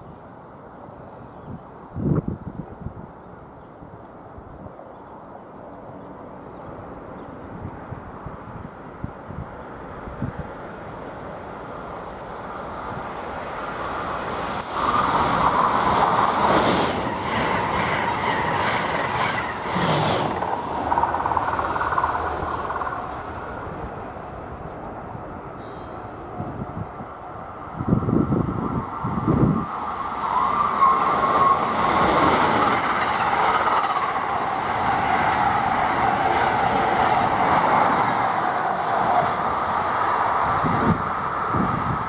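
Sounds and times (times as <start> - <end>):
electric train passing: 6.3 - 42.0
wheels clattering over rails: 14.8 - 23.5.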